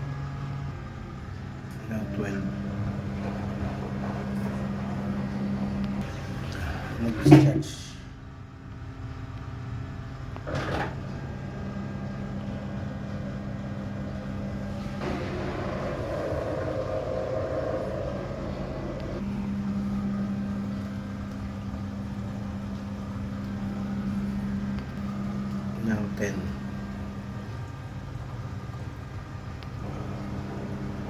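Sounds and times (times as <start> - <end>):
drain pump humming: 0.0 - 31.0
water rushing: 2.1 - 7.4, 13.8 - 31.0.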